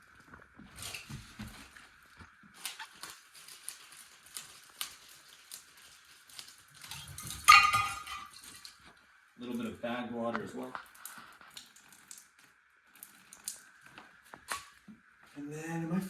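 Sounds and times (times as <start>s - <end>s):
plastic bag crinkling: 0.0s - 8.9s, 10.4s - 14.8s.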